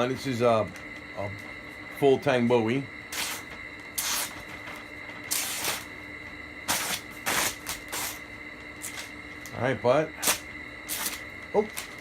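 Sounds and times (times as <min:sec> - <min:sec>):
knife slicing paper: 0:03.1 - 0:04.4, 0:06.7 - 0:08.2, 0:10.2 - 0:12.0.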